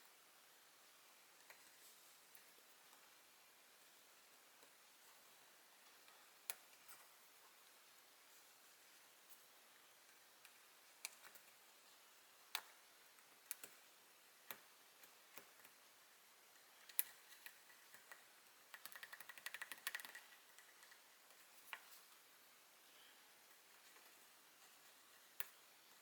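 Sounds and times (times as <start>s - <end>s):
light hard clicks and taps: 13.4s - 13.8s, 16.9s - 22.2s, 25.2s - 26.0s.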